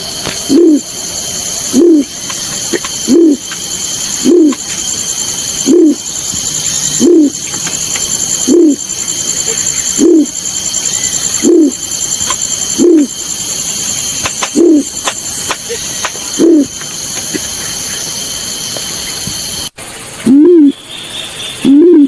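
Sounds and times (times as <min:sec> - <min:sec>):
bird hooting coo notes: 0:00.4 - 0:13.7, 0:14.3 - 0:17.5, 0:20.2 - 0:20.8, 0:21.6 - 0:22.0.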